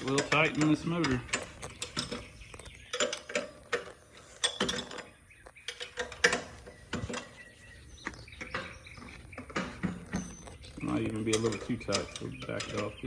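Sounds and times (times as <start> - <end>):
wrench clicking on bolts: 0.0 - 7.3, 11.0 - 13.0.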